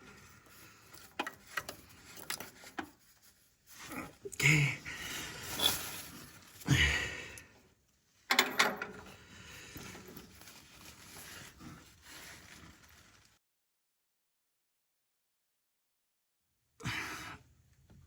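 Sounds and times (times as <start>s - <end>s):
wrench knocking and scraping: 8.3s - 9.1s.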